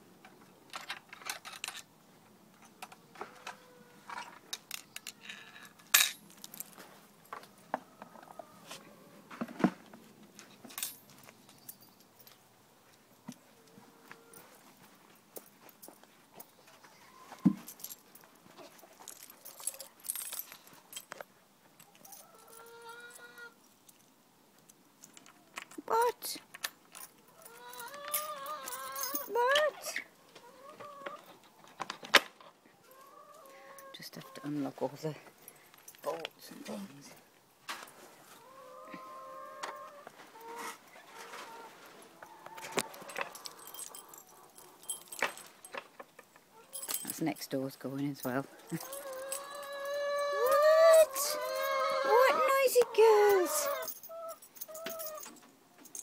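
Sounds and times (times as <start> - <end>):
metal bolts and keys rattling: 0.7 - 1.9, 4.5 - 7.4, 10.6 - 12.4, 17.6 - 22.6, 24.6 - 30.0, 42.8 - 56.0
hens calling: 27.3 - 31.4, 38.3 - 44.8, 48.5 - 55.3
hen calling: 49.0 - 55.2.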